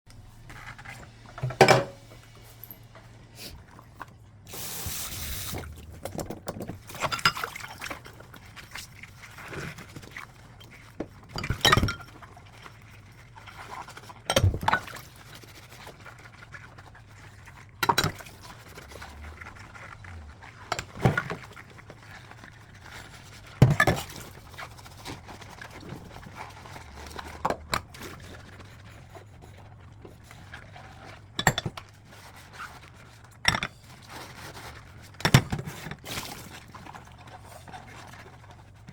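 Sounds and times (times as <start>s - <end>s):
plates and bowls clinking: 1.4s - 2.8s.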